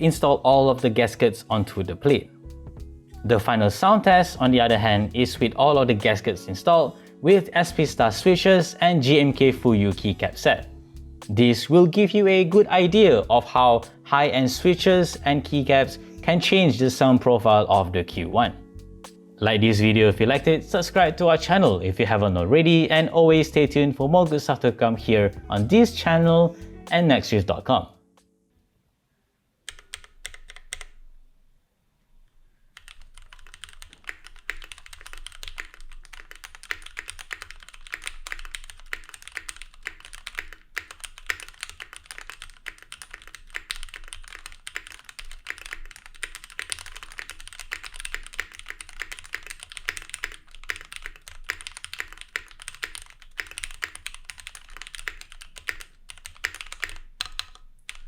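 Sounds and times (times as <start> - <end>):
mechanical keyboard typing: 29.7 - 31.0, 32.8 - 58.0.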